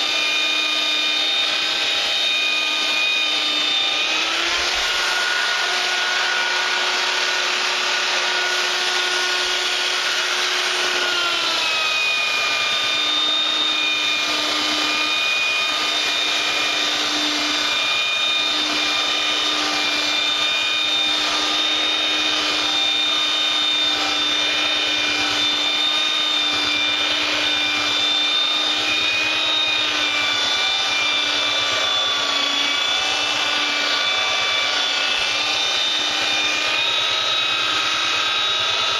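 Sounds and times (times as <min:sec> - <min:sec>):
electric sander on wood: 0:00.0 - 0:38.9.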